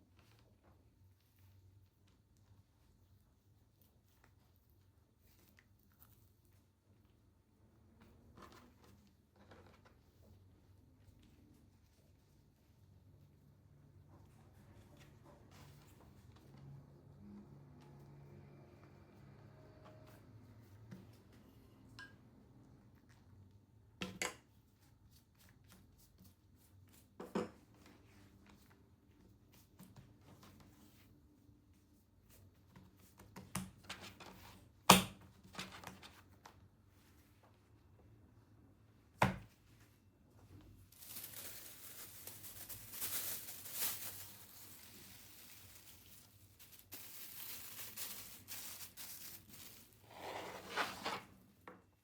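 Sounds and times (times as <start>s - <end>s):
rustling and scraping: 39.6s - 51.6s.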